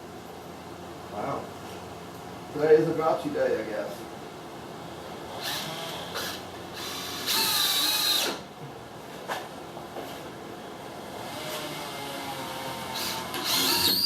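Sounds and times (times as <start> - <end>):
power drill driving screws into wood: 5.4 - 8.4, 11.3 - 14.0.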